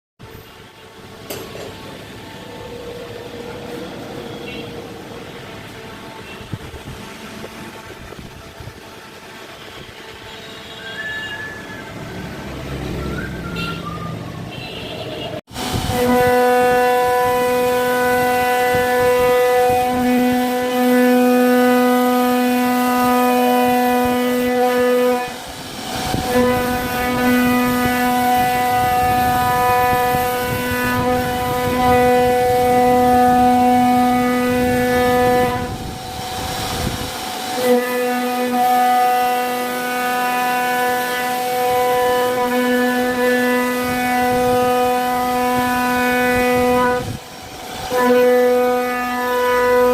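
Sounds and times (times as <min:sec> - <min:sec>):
router spindle whining: 0:22.5 - 0:37.8.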